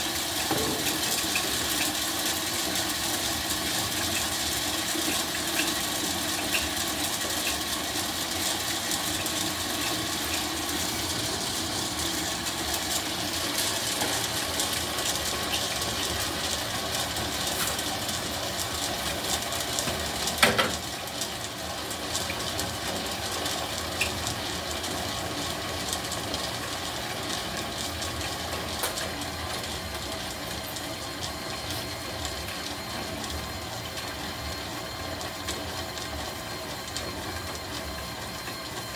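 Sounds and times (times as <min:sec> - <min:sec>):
popcorn machine running: 0:00.0 - 0:38.9.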